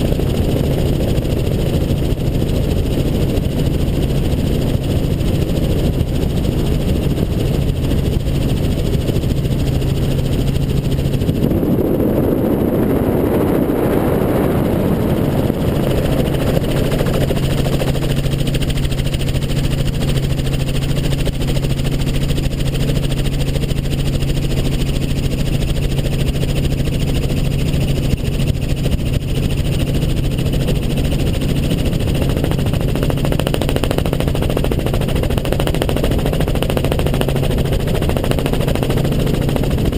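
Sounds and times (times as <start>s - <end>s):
helicopter engine and rotor: 0.0s - 39.9s.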